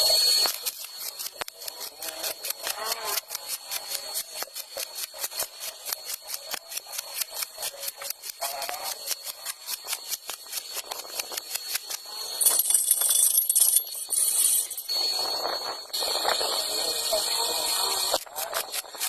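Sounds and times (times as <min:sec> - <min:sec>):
arc welding crackle: 0:00.0 - 0:12.5
high whine: 0:07.4 - 0:18.6.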